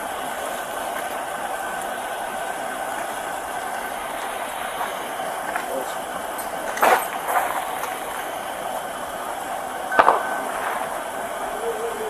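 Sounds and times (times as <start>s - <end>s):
steady background hiss: 0.0s - 12.0s.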